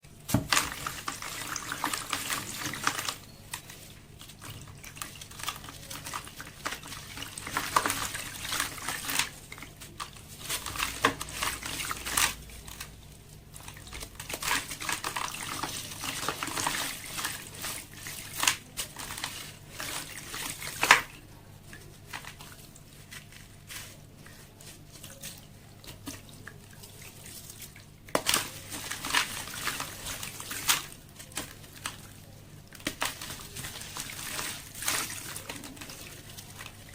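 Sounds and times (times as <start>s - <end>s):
slabs crumbling in water: 0.2s - 3.7s.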